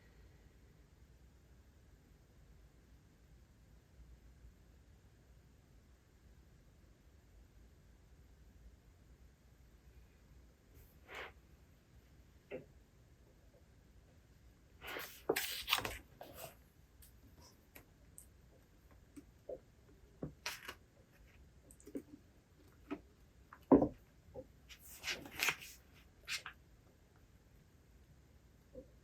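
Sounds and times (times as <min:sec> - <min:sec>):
book pages rustling: 0:14.8 - 0:16.6, 0:20.2 - 0:22.1, 0:24.7 - 0:26.6.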